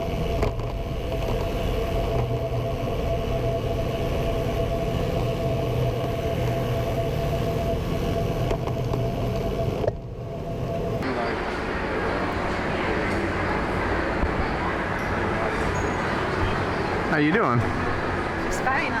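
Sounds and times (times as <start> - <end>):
vehicle running with whine: 0.0 - 19.0.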